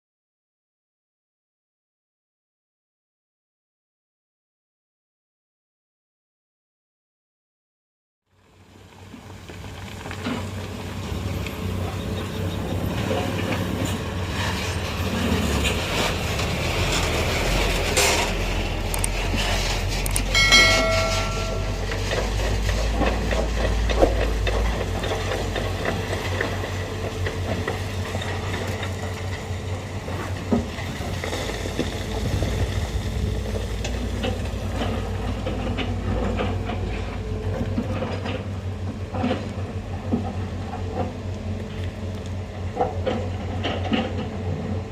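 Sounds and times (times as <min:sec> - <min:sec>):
heavy diesel machinery rumbling: 0:08.4 - 0:44.9
sharp metallic knocks: 0:20.2 - 0:24.6.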